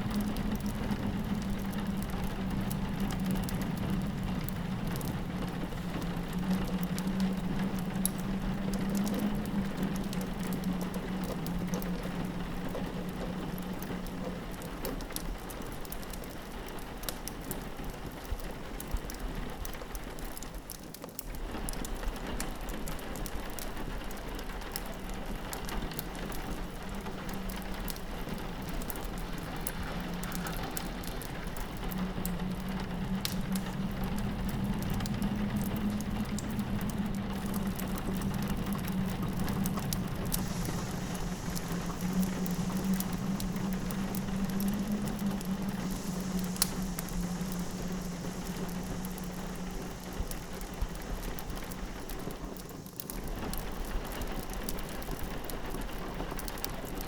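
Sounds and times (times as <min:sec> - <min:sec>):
fireplace crackling and popping: 0:00.0 - 0:57.0
rain pattering on a window: 0:00.0 - 0:57.0
wind howling: 0:25.0 - 0:57.0.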